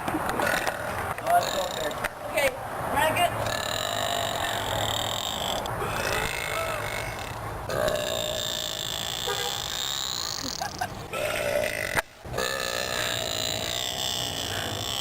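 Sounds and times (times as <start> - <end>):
woman belching: 3.5 - 15.0.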